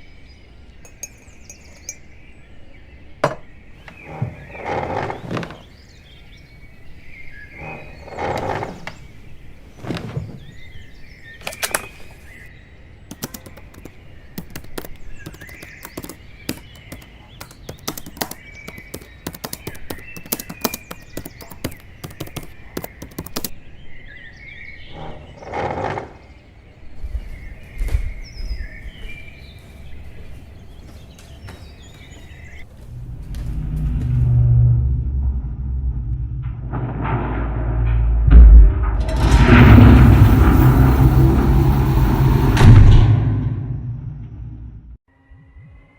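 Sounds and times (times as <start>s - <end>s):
birds chirping: 0.0s - 35.6s, 39.0s - 42.6s
sharp clicks or knocks: 11.4s - 12.3s, 13.1s - 23.5s.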